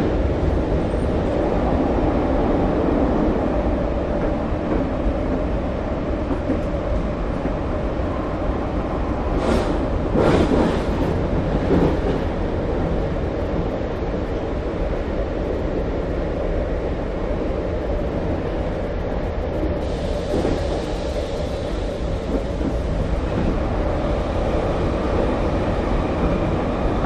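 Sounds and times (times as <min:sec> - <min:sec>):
subway train rumbling: 0:00.0 - 0:27.0
train clattering: 0:09.3 - 0:13.8, 0:19.6 - 0:27.0.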